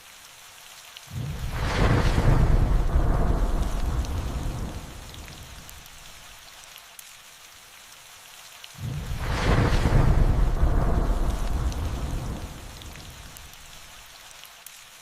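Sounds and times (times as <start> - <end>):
steady rain hiss: 0.0 - 15.0
raindrop ticks: 0.6 - 7.2, 8.3 - 14.9
thunderclap: 1.1 - 6.0, 8.8 - 13.8
thunder rumbling: 1.1 - 6.2, 8.8 - 13.8.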